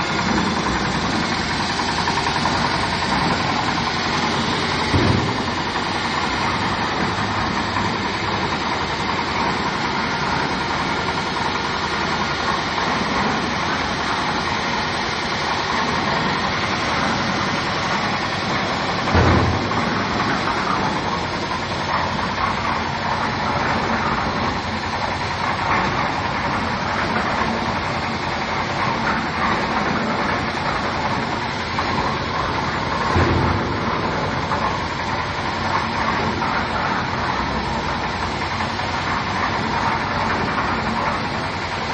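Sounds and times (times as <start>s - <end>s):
concrete mixer running: 0.0s - 41.9s
loud thump: 4.8s - 6.6s, 19.0s - 20.8s, 33.1s - 34.8s.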